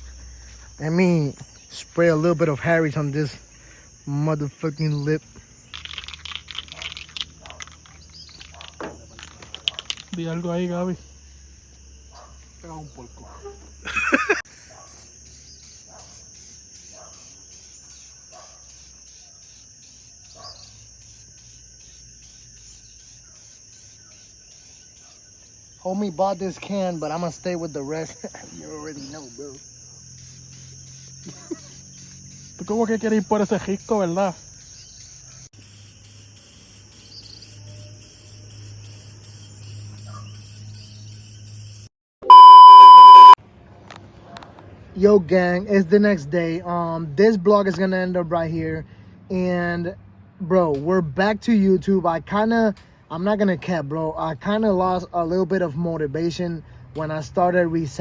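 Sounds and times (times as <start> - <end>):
crickets chirping: 0.0 - 44.0, 45.0 - 49.8, 51.1 - 58.0
electronic beep tone: 42.2 - 43.4.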